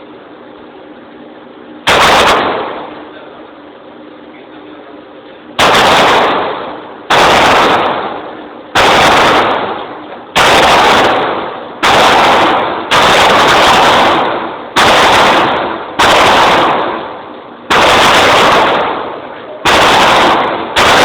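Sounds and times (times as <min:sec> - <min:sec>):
gunshots with echo: 0:01.9 - 0:03.0, 0:05.6 - 0:21.0.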